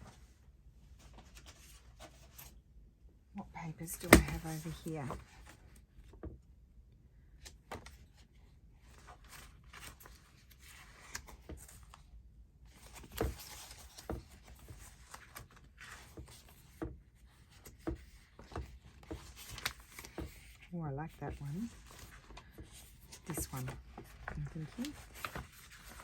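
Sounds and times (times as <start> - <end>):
paper sheets rustling: 12.7 - 20.6, 21.3 - 26.0.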